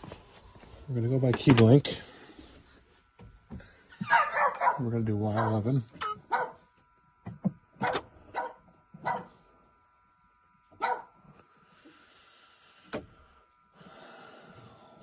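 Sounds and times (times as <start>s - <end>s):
dog barking: 4.0s - 5.6s, 6.3s - 6.6s, 7.8s - 9.4s, 10.8s - 11.2s.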